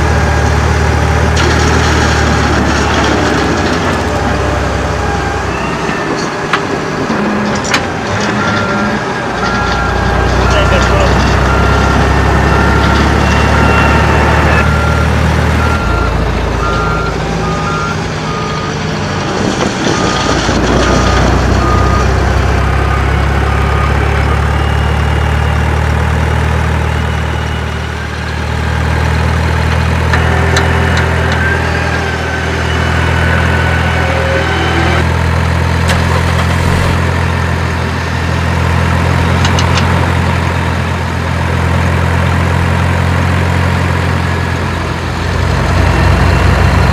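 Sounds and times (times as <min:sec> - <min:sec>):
truck engine idling: 0:00.0 - 0:19.5, 0:20.6 - 0:46.9
reversing beeper: 0:02.3 - 0:18.9, 0:19.8 - 0:35.1, 0:35.8 - 0:37.7, 0:45.2 - 0:46.9.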